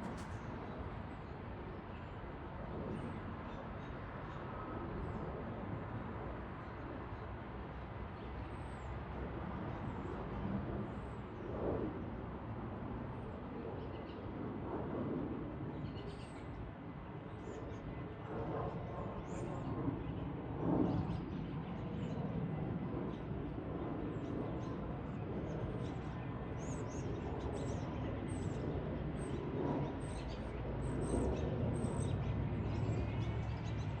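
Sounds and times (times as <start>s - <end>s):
low outdoor rumble: 22.6s - 34.0s.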